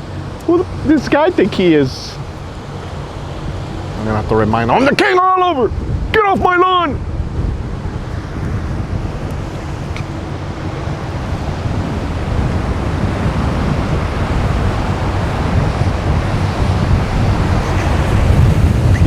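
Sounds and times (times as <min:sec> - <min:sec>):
heavy surf: 0:00.0 - 0:19.0
strong wind across microphone: 0:00.0 - 0:19.0.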